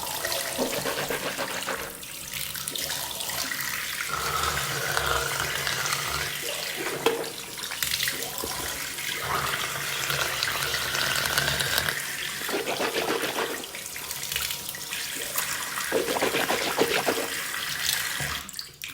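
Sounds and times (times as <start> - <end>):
toothbrush scrubbing teeth: 0.2 - 2.2, 4.1 - 14.0, 15.3 - 17.5.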